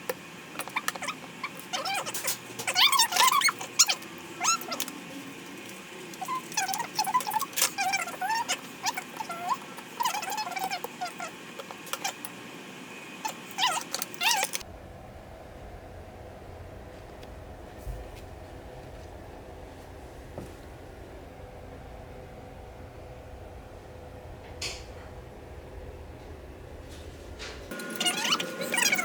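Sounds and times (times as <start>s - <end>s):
low steady hum: 14.6s - 29.0s.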